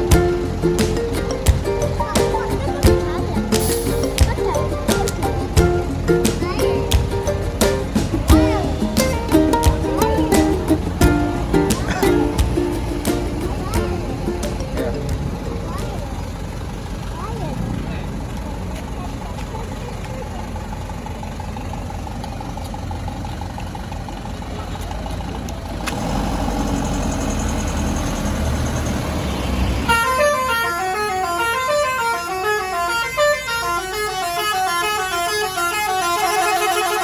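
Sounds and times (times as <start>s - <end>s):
bus engine rumbling: 0.0s - 37.0s
musical bus horn melody: 29.9s - 37.0s.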